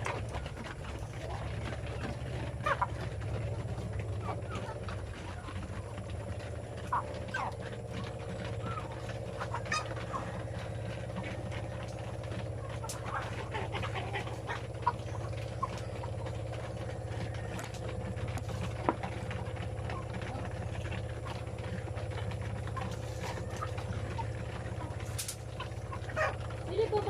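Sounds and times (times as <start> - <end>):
chickens clucking: 0.0 - 27.0
steady low hum: 0.0 - 27.0.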